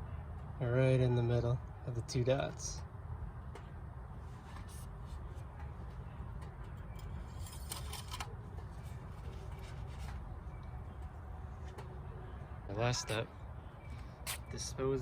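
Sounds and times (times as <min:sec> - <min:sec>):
clicks and scrapes: 0:07.0 - 0:08.3.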